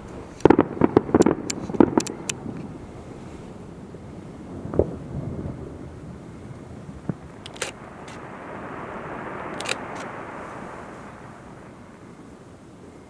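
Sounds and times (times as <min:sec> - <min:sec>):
fireworks sharp cracks: 0:00.0 - 0:02.8, 0:07.1 - 0:12.2
fireworks booming: 0:00.0 - 0:12.7
continuous low rumble: 0:00.0 - 0:13.0.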